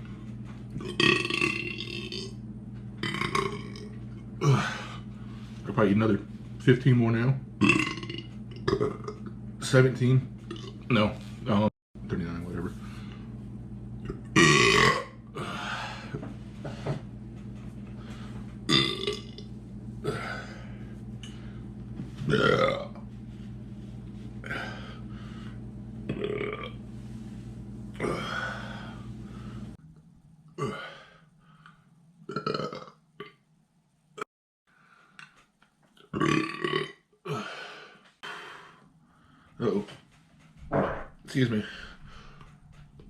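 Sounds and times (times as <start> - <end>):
steady low hum: 0.0 - 43.0
man belching: 0.8 - 2.4, 3.0 - 3.8, 7.6 - 9.3, 14.0 - 15.2, 18.7 - 19.4, 22.3 - 23.0, 26.1 - 26.8, 30.6 - 30.9, 32.3 - 33.4, 36.1 - 37.5.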